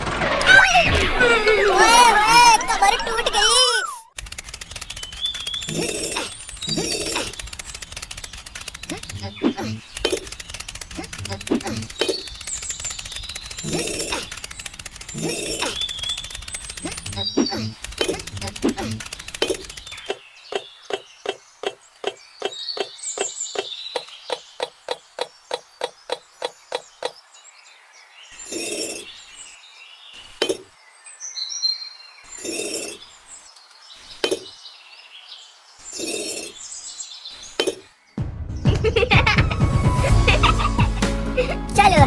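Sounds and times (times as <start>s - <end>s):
faint bird chirps: 4.8s - 38.2s.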